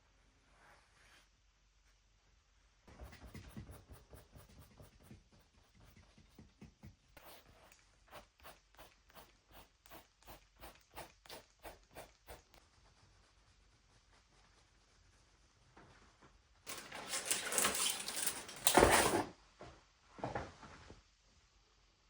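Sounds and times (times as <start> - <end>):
drawing tool scratching paper: 7.2 - 12.6.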